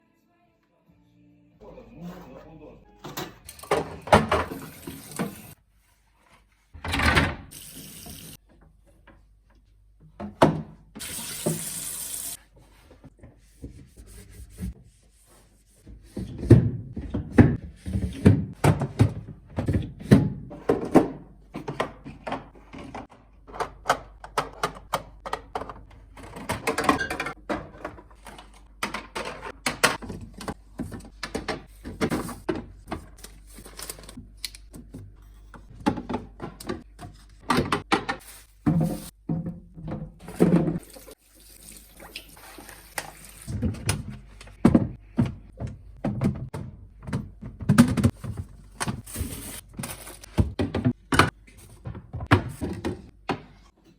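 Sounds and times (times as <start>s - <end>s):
water running from a tap: 7.5s - 8.4s, 11.0s - 12.4s, 40.8s - 43.5s.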